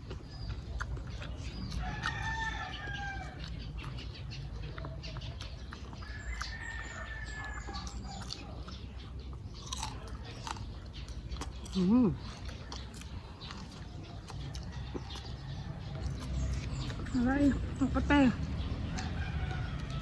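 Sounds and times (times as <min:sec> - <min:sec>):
eating clicks and crunches: 0:00.0 - 0:20.0
rooster crowing: 0:01.8 - 0:03.4, 0:19.0 - 0:20.0.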